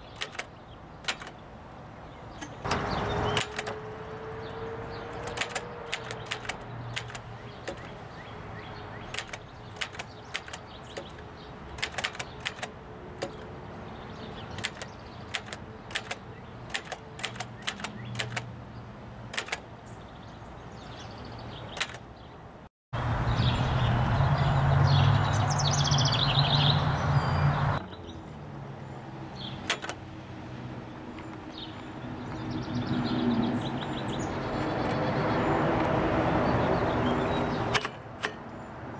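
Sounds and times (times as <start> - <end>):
typewriter key strikes: 0.0 - 1.4, 2.4 - 3.8, 5.1 - 8.0, 9.1 - 13.5, 14.5 - 18.5, 19.3 - 19.7, 21.8 - 22.1, 29.6 - 30.0, 37.7 - 38.5.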